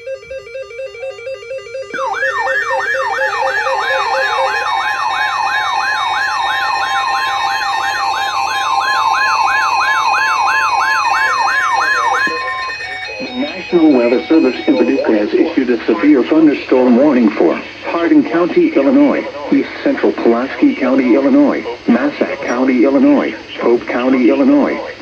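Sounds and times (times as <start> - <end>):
electronic jingle: 0.0 - 15.8
rapid yelp siren: 0.0 - 17.6
steady alarm tone: 0.0 - 25.0.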